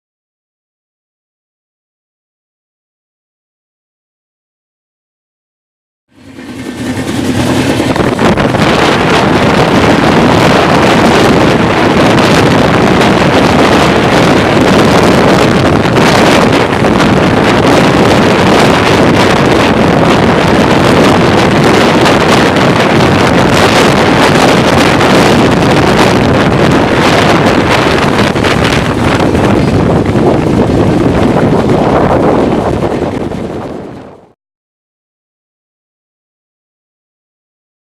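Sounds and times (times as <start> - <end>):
moving vehicle rumble: 6.1 - 34.3
wind buffeting microphone: 6.2 - 34.4.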